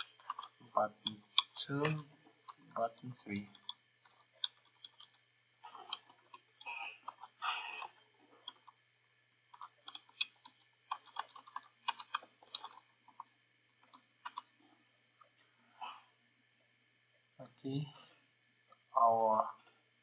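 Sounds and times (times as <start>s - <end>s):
keyboard typing: 0.0s - 2.0s, 9.5s - 12.8s
faint low hum: 0.0s - 20.0s.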